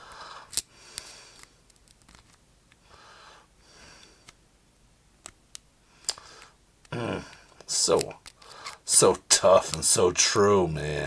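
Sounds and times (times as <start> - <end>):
breathing through the nose: 0.0 - 1.5, 8.4 - 8.8.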